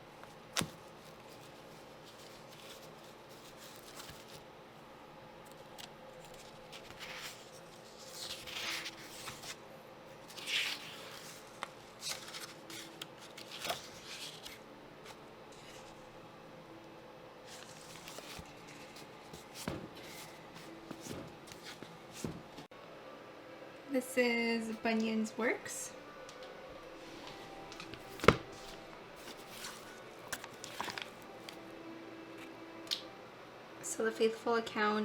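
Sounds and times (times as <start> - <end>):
book pages turning: 0.2 - 4.4, 5.5 - 16.1, 17.5 - 22.7, 27.0 - 31.6.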